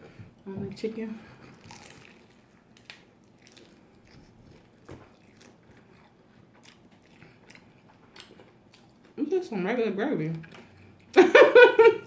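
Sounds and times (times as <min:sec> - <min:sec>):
person chewing food: 0:01.3 - 0:09.2.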